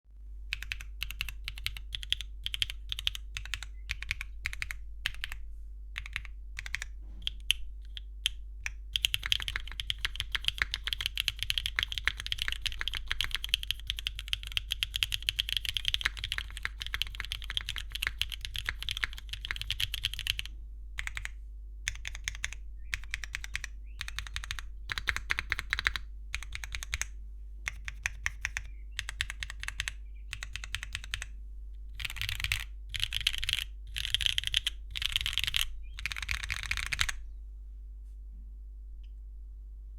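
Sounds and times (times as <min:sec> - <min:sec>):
faint steady hum: 0:00.1 - 0:39.9
keyboard keystroke clacks: 0:00.5 - 0:05.4, 0:06.0 - 0:27.1, 0:27.7 - 0:31.3.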